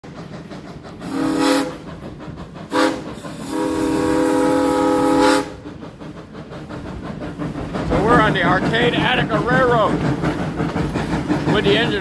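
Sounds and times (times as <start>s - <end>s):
steam locomotive whistle: 1.0s - 1.9s, 2.7s - 5.6s.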